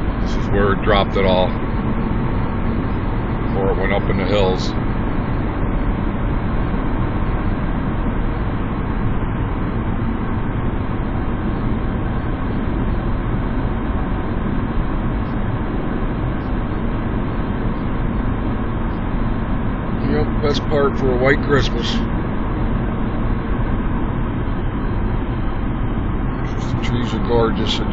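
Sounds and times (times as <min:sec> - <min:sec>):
car road noise from inside cabin: 0:19.2 - 0:27.9.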